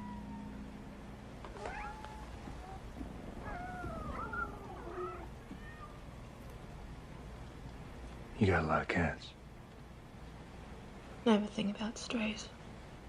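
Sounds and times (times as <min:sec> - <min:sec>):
cats meowing: 0:01.5 - 0:06.2.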